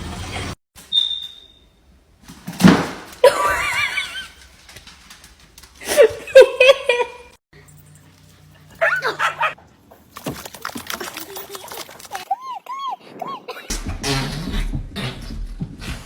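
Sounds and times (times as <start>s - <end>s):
animal high-pitched cries: 12.2s - 13.7s.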